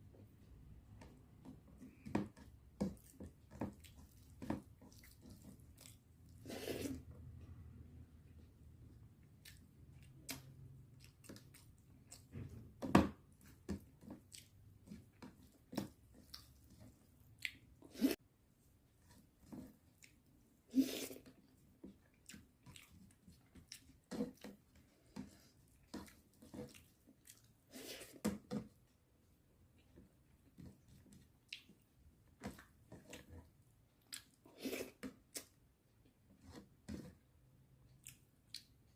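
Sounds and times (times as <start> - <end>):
person chewing food: 1.1 - 7.6, 8.3 - 18.2, 18.9 - 29.0, 29.7 - 38.9
wet mouth clicks and smacks: 37.9 - 38.8.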